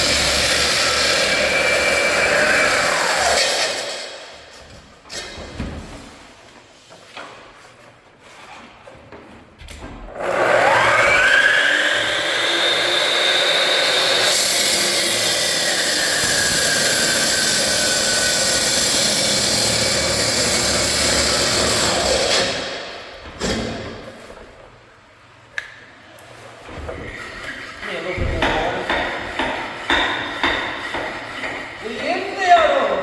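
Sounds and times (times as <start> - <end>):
saw blade cutting: 0.0 - 4.4, 10.2 - 23.0.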